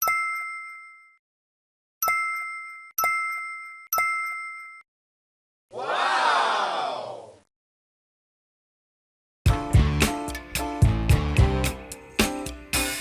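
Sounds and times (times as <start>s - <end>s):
bell-like ding: 0.0s - 1.2s, 2.0s - 4.8s.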